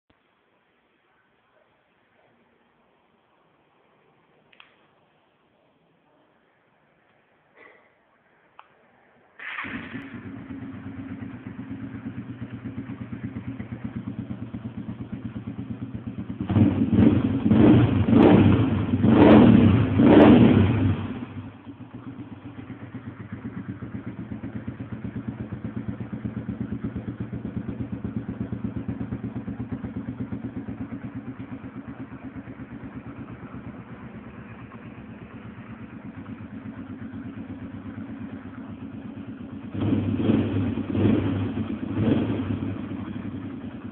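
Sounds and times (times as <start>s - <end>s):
engine idling and revving: 9.4s - 43.9s.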